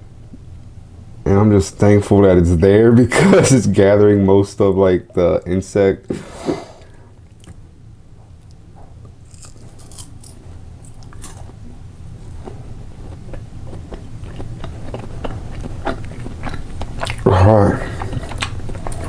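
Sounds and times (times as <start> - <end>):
person chewing crunchy food: 8.4 - 19.0.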